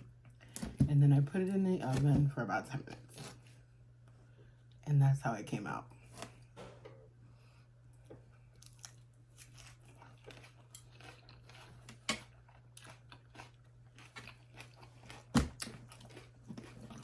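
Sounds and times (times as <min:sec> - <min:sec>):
steady low hum: 0:00.0 - 0:17.0
chewing and crunching: 0:08.0 - 0:17.0.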